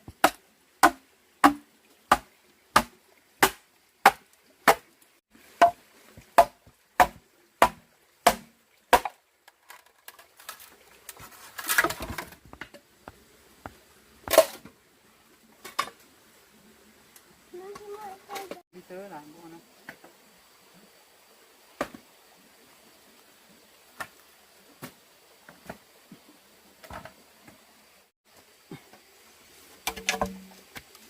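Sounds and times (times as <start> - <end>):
blade chopping into wood: 0.2 - 4.8, 6.4 - 9.2
scraping and crackling: 9.5 - 12.8.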